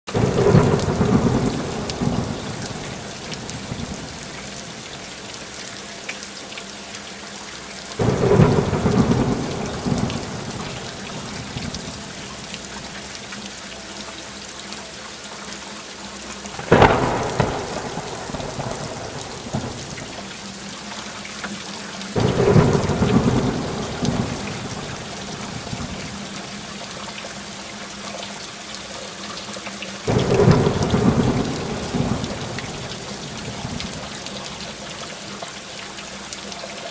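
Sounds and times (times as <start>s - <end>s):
thunder rumbling: 0.1s - 4.8s, 8.0s - 12.5s, 16.5s - 20.5s, 22.2s - 26.5s, 30.1s - 34.7s
heavy rain: 0.1s - 36.9s.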